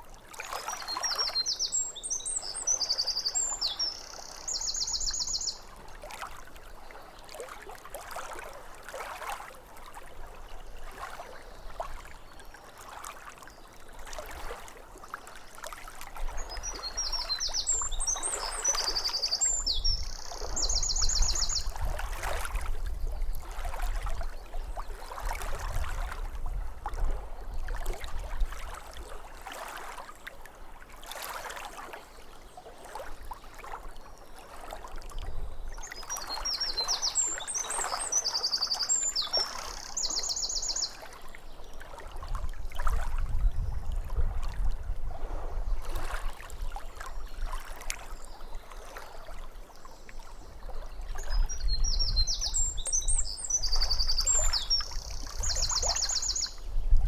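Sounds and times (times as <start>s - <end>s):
small waves lapping at shore: 0.0s - 57.0s
songbird singing with trill: 0.8s - 5.7s, 16.4s - 21.8s, 35.8s - 41.0s, 51.2s - 56.6s.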